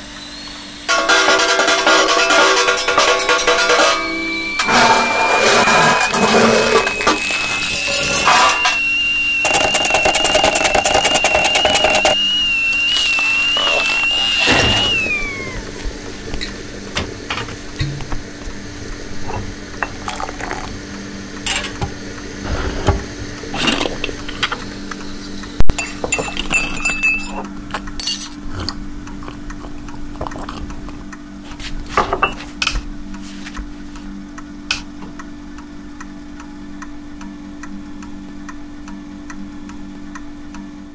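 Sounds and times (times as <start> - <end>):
steady low hum: 10.4 - 40.9
dishes and cutlery clinking: 25.7 - 28.6, 31.9 - 32.7.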